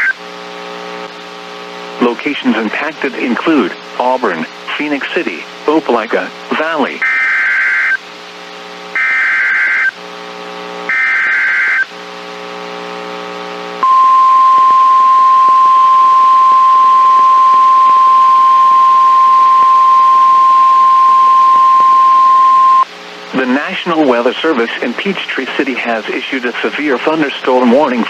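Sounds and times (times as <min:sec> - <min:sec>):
low buzz: 0:13.8 - 0:22.9
steady warning alarm tone: 0:13.8 - 0:22.9.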